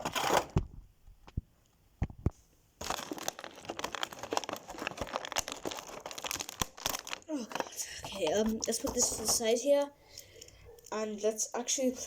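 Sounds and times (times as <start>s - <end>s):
plastic packaging crinkling: 2.8s - 9.6s.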